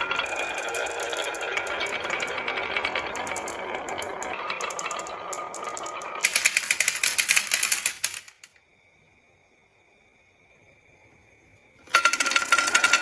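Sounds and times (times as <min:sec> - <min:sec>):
rapid clicking and clattering: 0:00.0 - 0:08.5, 0:11.9 - 0:13.0
marbles rolling down a track: 0:00.0 - 0:08.6, 0:11.8 - 0:13.0.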